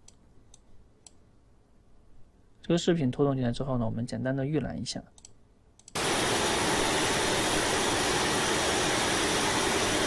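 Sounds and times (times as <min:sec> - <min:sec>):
loud steady noise hiss: 0:06.0 - 0:10.0.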